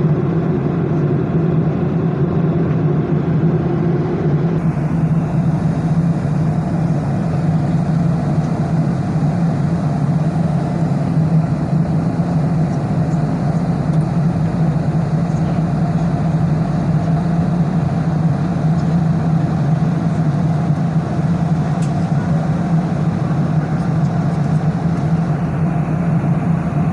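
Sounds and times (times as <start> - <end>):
airplane engine drone in cabin: 0.0 - 26.9.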